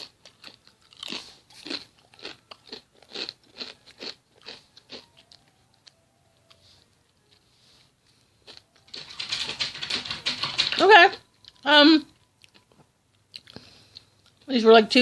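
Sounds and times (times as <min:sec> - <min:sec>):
potato chips crunching: 0:00.0 - 0:06.6, 0:08.4 - 0:09.0.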